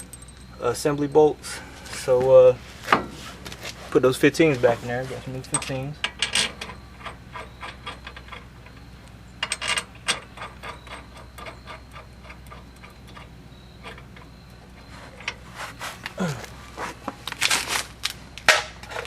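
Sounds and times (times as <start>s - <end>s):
metallic clicks of tools and bolts: 0.0s - 0.6s, 5.4s - 15.4s.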